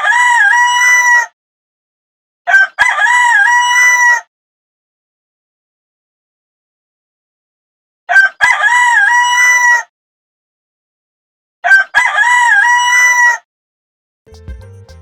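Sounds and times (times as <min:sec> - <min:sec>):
rooster crowing: 0:00.0 - 0:01.3, 0:02.5 - 0:04.3, 0:08.1 - 0:09.8, 0:11.6 - 0:13.4.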